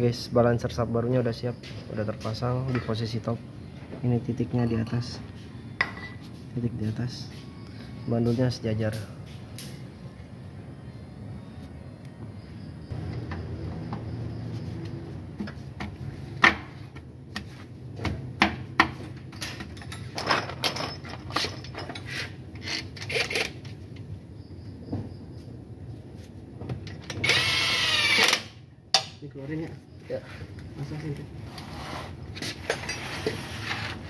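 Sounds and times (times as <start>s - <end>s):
metal tools clinking on engine parts: 5.8s - 6.3s, 19.2s - 23.8s
power tool running: 27.2s - 28.5s.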